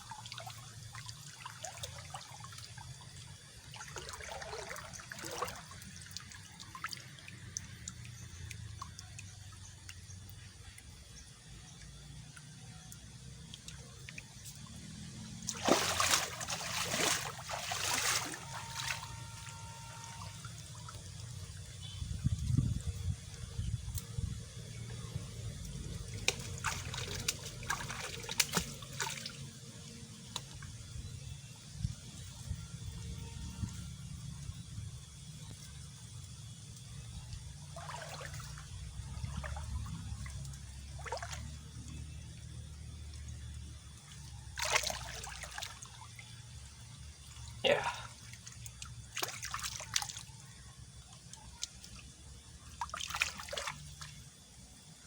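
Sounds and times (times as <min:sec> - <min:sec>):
water splashing and trickling: 0:00.0 - 0:55.0
steady low rumble: 0:18.8 - 0:28.8.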